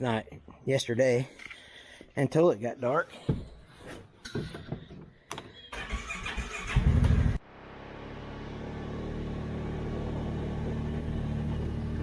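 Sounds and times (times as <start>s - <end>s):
tractor engine starting and idling: 5.5s - 12.0s.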